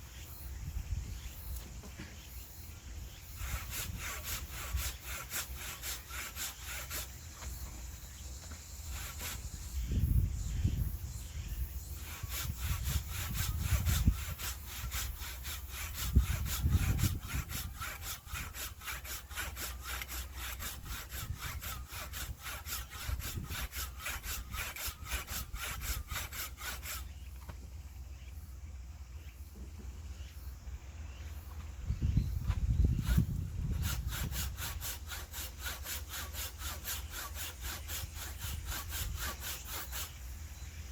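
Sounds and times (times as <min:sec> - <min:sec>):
hand saw cutting wood: 0:03.2 - 0:10.0, 0:11.9 - 0:27.6, 0:32.5 - 0:40.2.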